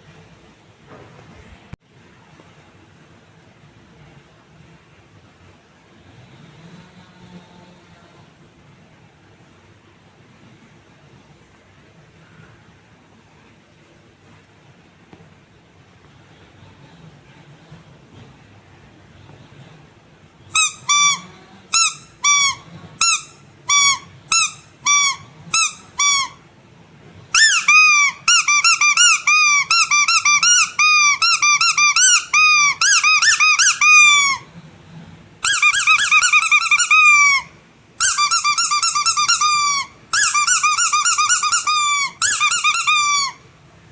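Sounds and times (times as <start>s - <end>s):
squeaky rubber toy squeaking: 20.5s - 26.4s, 27.3s - 34.5s, 35.4s - 43.4s.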